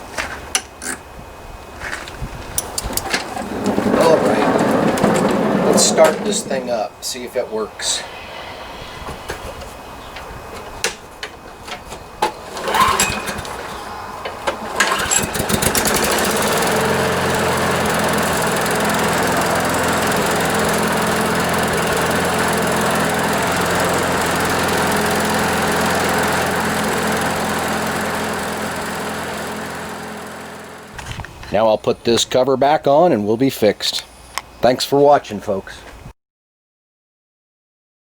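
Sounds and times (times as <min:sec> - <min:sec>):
lawn mower engine running: 0:01.8 - 0:07.2, 0:10.6 - 0:31.5
knocks and clatter: 0:02.6 - 0:06.7.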